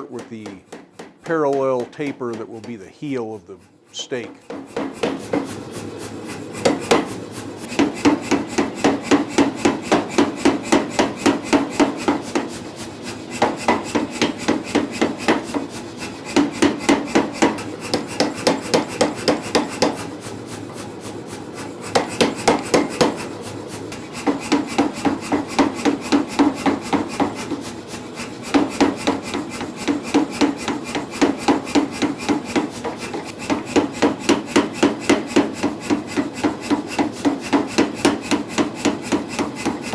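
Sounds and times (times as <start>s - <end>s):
power hammer blows: 0.0s - 5.6s.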